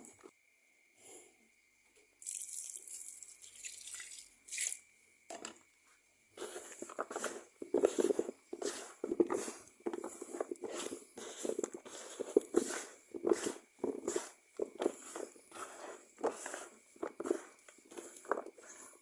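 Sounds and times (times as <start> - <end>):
cattle crunching feed: 6.5 - 19.0.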